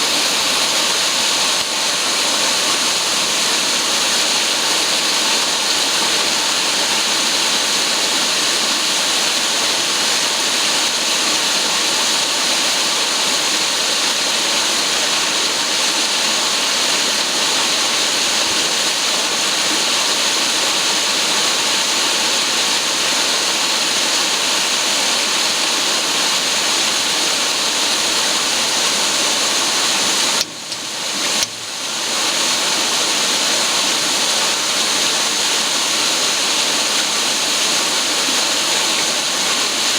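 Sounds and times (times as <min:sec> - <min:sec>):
vacuum cleaner rushing whine: 0:00.0 - 0:08.8.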